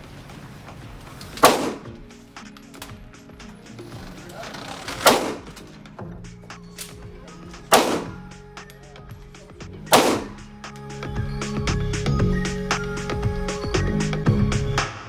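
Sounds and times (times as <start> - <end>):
background music: 0.0 - 15.0
gunshots with ringing tail: 1.4 - 2.0, 5.0 - 5.5, 7.7 - 8.3, 9.9 - 10.4.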